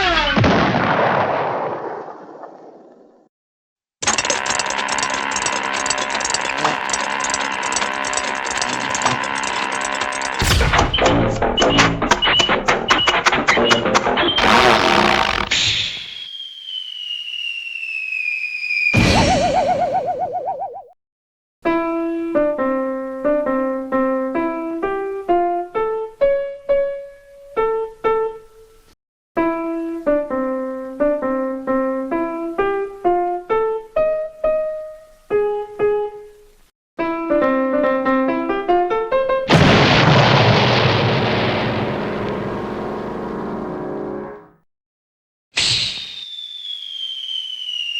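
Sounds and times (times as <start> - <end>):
loud explosion-like burst: 10.4 - 12.6, 39.5 - 42.7.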